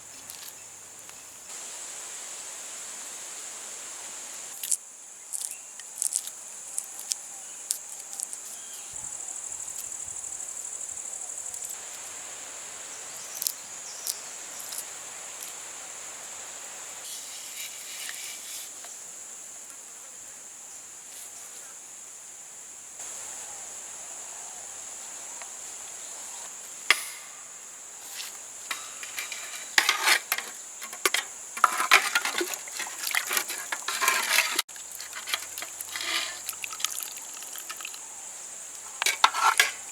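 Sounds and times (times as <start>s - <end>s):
insects chirring: 0.0s - 39.9s
sharp clicks and knocks: 28.7s - 36.4s.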